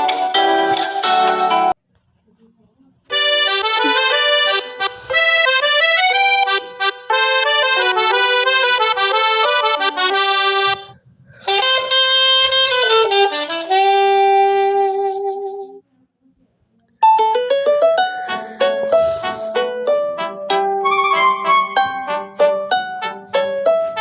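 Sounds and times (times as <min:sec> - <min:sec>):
synthesized ringtone melody: 0:03.1 - 0:04.7.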